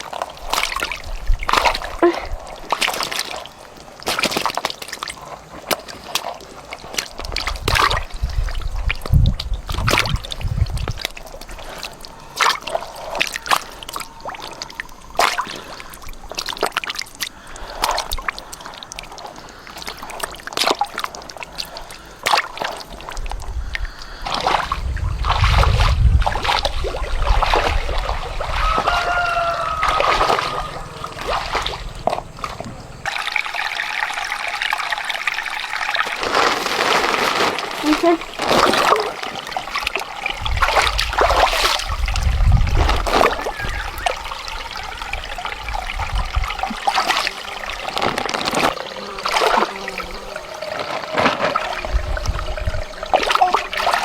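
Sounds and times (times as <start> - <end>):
water splashing and sloshing: 0.0 - 54.0.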